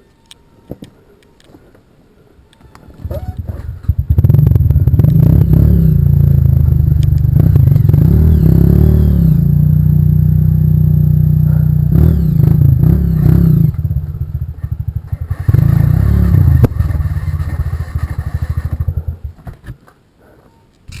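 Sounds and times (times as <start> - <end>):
motorcycle engine revving: 3.0 - 19.7.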